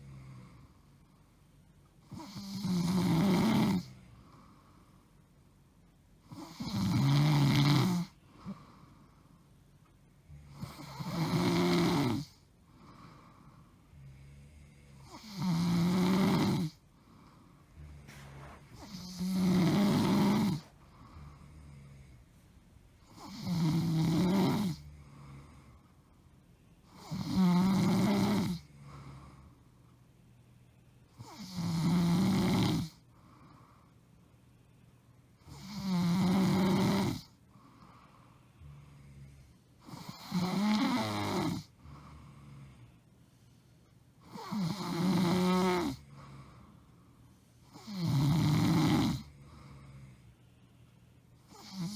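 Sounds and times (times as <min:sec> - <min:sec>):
woman snoring loudly: 0:02.1 - 0:04.1, 0:06.3 - 0:08.6, 0:10.3 - 0:12.4, 0:13.9 - 0:16.8, 0:17.8 - 0:22.2, 0:23.0 - 0:25.7, 0:26.9 - 0:29.4, 0:31.2 - 0:33.0, 0:35.4 - 0:37.4, 0:38.6 - 0:42.7, 0:44.2 - 0:46.3, 0:47.7 - 0:50.1, 0:51.5 - 0:51.9.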